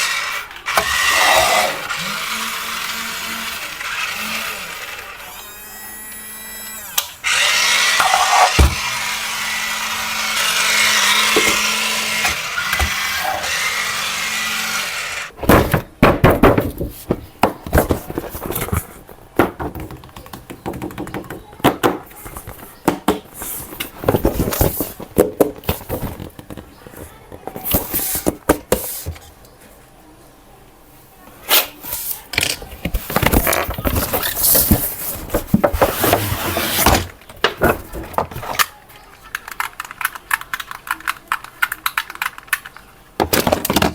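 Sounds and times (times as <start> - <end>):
small electric motor whirring: 0.0 - 15.3
hard plastic parts clicking: 32.3 - 43.9.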